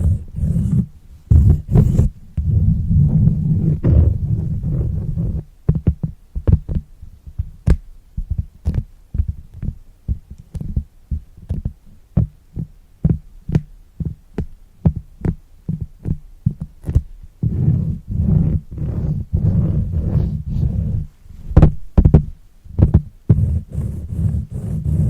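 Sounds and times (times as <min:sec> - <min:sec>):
continuous rubbing: 0:00.0 - 0:07.5, 0:13.5 - 0:25.0.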